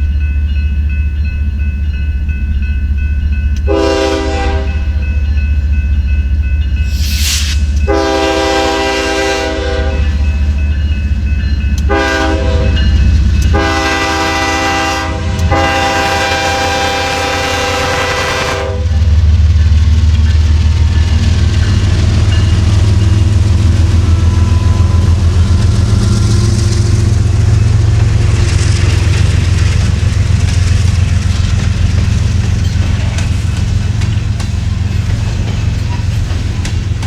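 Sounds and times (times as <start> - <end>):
locomotive engine rumble: 0.0 - 37.0
train horn: 3.6 - 5.1, 7.8 - 10.4, 11.8 - 19.1, 23.6 - 27.6.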